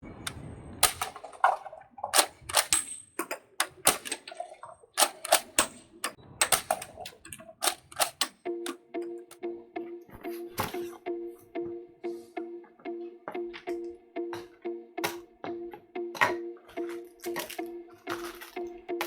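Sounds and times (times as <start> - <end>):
plastic toy gun clicking: 0.3 - 9.4.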